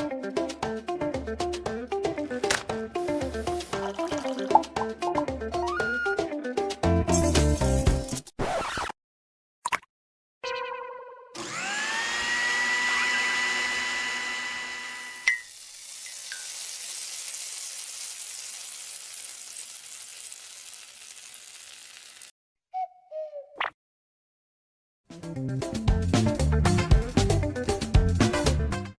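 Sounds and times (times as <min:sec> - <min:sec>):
electric mixer whining: 0:11.4 - 0:15.3
batter sizzling in a pan: 0:15.1 - 0:22.3.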